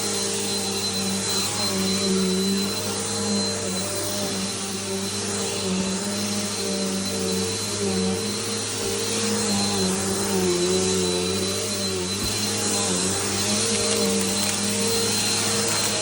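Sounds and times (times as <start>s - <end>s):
high whine: 0.0s - 16.0s
vacuum cleaner running: 0.0s - 16.0s.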